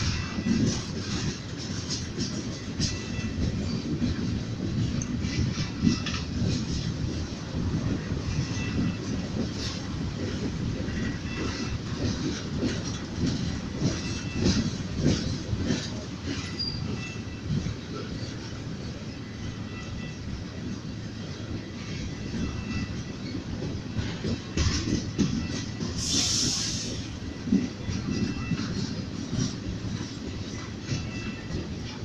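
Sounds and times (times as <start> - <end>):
train wheels knocking over rail joints: 0.0 - 32.0
faint wheel squeals: 16.3 - 18.4.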